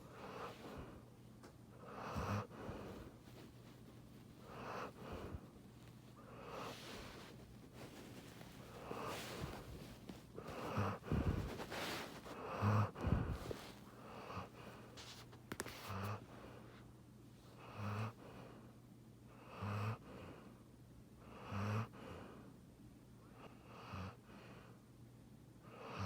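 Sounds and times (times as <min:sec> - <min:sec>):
dog snoring: 0:00.0 - 0:01.0, 0:01.8 - 0:03.4, 0:04.4 - 0:05.5, 0:06.2 - 0:15.2, 0:17.6 - 0:18.5, 0:19.3 - 0:20.5, 0:21.2 - 0:22.4, 0:23.3 - 0:24.6, 0:25.6 - 0:26.0.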